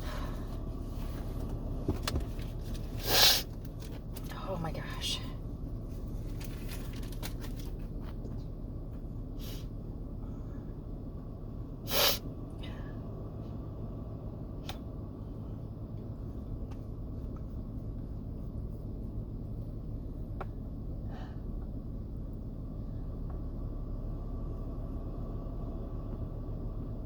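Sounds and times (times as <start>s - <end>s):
low room hum: 0.0s - 27.0s
person sneezing: 11.9s - 12.2s.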